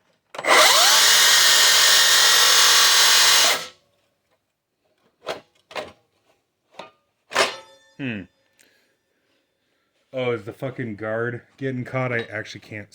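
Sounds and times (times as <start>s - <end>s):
circular saw whining: 0.4s - 3.7s.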